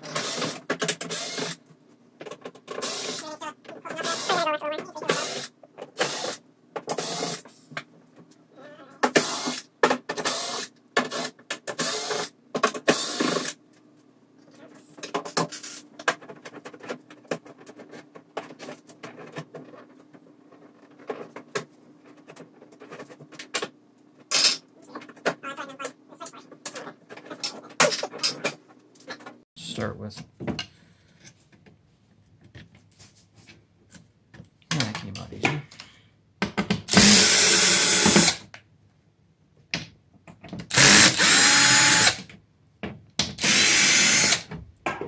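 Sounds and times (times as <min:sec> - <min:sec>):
loud noisy tool bursts: 0:04.0 - 0:04.4, 0:36.9 - 0:38.4, 0:40.7 - 0:42.2, 0:43.4 - 0:44.5.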